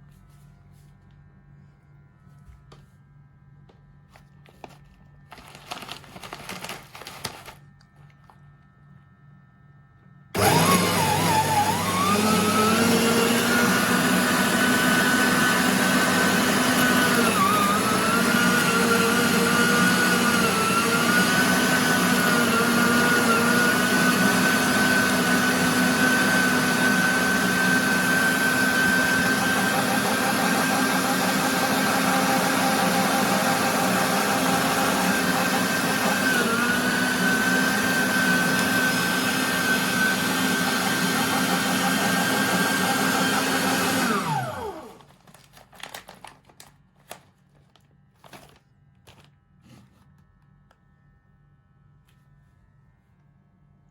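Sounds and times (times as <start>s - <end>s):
meat grinder motor whine: 10.0s - 46.2s.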